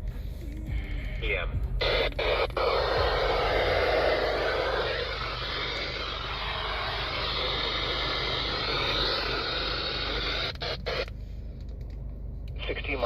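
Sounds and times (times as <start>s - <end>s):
low hum: 0.0s - 13.0s
radio static hiss: 1.2s - 11.1s, 12.6s - 13.0s.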